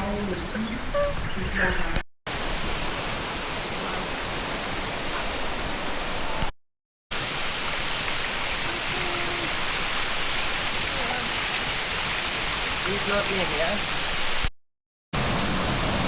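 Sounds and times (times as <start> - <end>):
waterfall rushing: 2.3 - 6.5, 7.1 - 14.4, 15.2 - 16.0.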